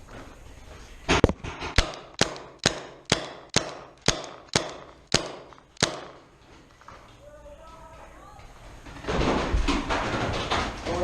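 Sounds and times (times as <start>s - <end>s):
paintball marker shots: 1.1s - 6.3s.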